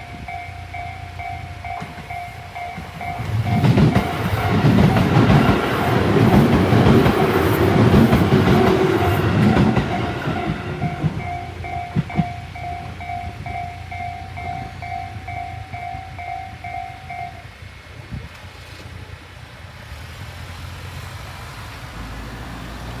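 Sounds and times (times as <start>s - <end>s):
electronic level-crossing bell: 0.0s - 5.4s, 9.9s - 17.5s
low train rumble: 0.0s - 23.0s.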